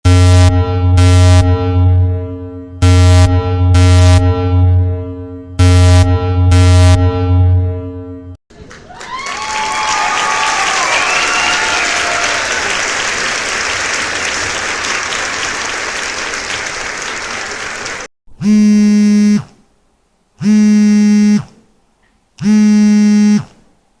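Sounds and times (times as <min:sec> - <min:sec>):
buzzer blasts: 0:00.0 - 0:08.2, 0:18.4 - 0:19.6, 0:20.4 - 0:21.6, 0:22.4 - 0:23.6
applause: 0:08.5 - 0:18.1.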